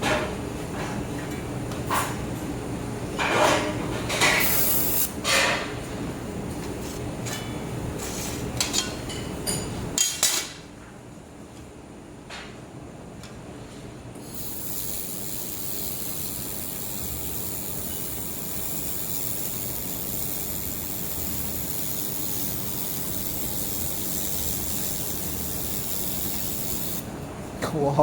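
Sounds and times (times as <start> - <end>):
laser welder hissing: 4.3 - 5.1, 14.2 - 27.1.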